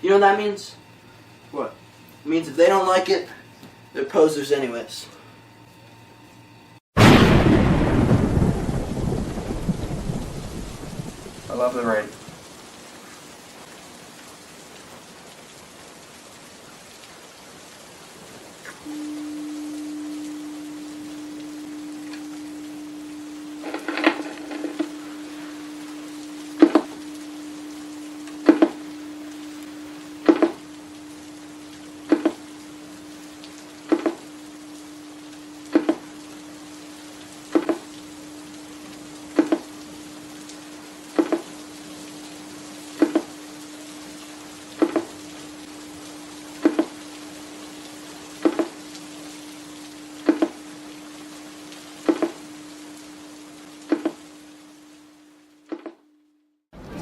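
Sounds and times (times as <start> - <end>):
static hiss: 0.0 - 57.0
low hum tone: 18.8 - 57.0.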